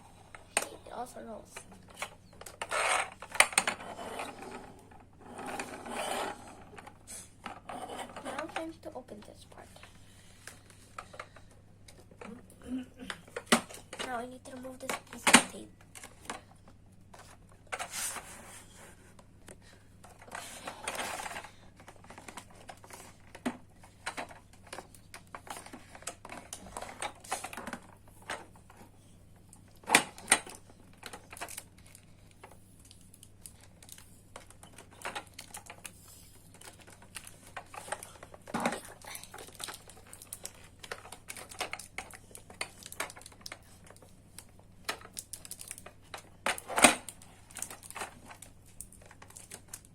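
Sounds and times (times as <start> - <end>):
toy packaging crinkling: 32.8 - 49.9.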